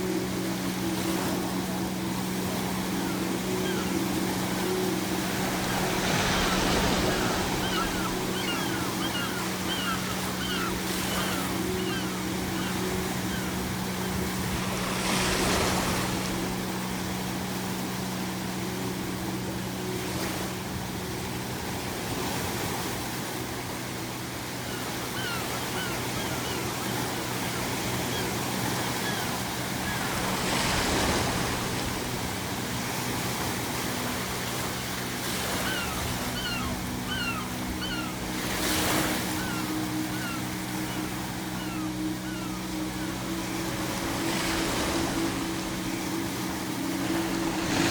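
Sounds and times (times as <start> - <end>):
low steady drone: 0.0 - 47.9
ocean waves breaking: 0.0 - 47.9
seagull calls: 2.6 - 16.0, 24.5 - 31.6, 35.2 - 47.9.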